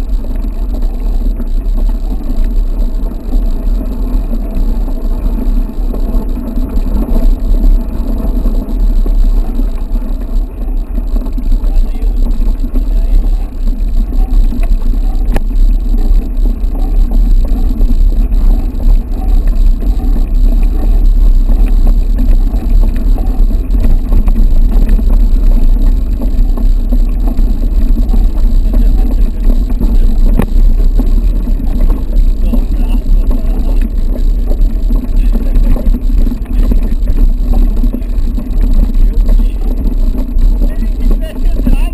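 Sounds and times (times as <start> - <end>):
bike rolling on dirt trail: 0.0 - 41.9
wind buffeting microphone: 0.0 - 41.9.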